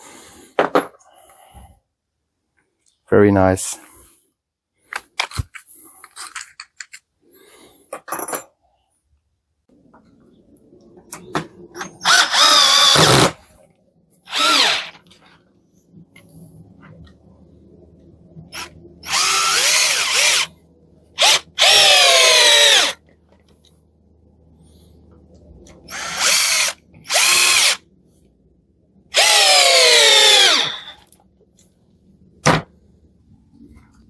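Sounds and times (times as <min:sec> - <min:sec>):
cordless drill motor whirring: 0:11.8 - 0:13.4, 0:14.3 - 0:15.0, 0:18.5 - 0:20.5, 0:21.2 - 0:23.0, 0:25.9 - 0:27.8, 0:29.1 - 0:31.1.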